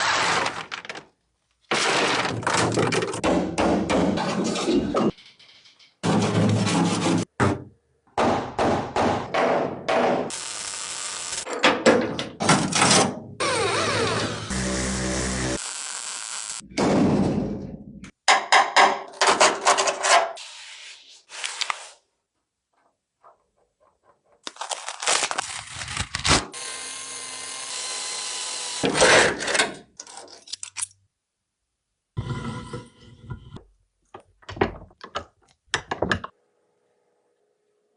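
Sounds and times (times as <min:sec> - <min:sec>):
knocks on metal and wood: 0:03.0 - 0:04.4, 0:07.3 - 0:10.3, 0:16.7 - 0:19.6
small power tool running: 0:10.3 - 0:11.4, 0:14.1 - 0:16.6, 0:26.6 - 0:28.8
loud grinding: 0:14.1 - 0:15.6.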